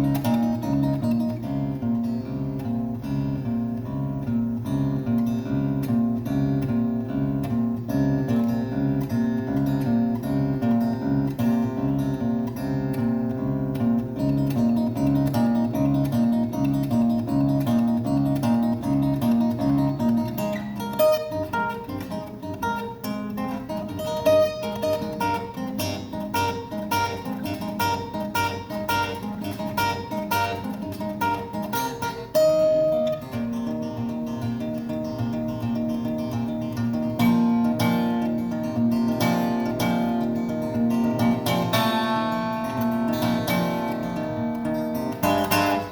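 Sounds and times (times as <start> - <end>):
acoustic guitar playing: 0.0 - 45.9.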